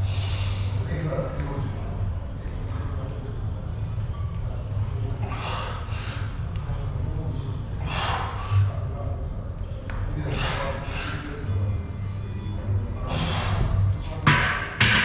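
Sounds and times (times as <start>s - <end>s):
low hum: 0.0s - 15.0s
person breathing forcefully: 13.1s - 14.0s.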